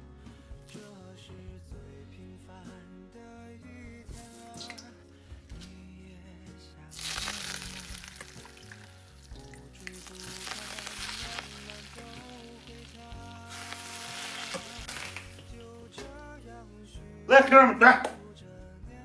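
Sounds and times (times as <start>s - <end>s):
background music: 0.0s - 19.0s
food sizzling in hot oil: 6.9s - 16.0s.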